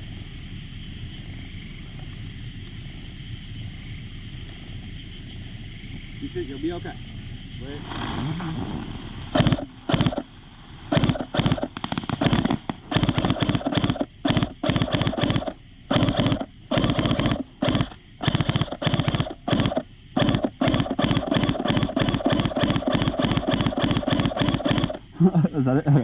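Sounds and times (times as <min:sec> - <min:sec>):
airsoft rifle bursts: 0:09.3 - 0:10.3, 0:10.9 - 0:25.0.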